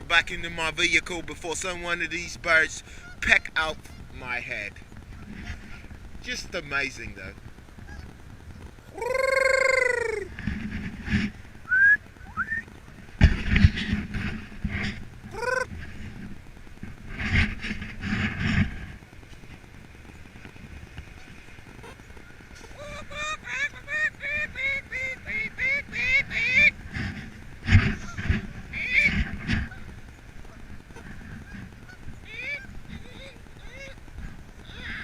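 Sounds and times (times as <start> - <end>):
geese honking: 7.8 - 10.3, 21.1 - 35.0
loud thumps with rustling: 13.2 - 15.1.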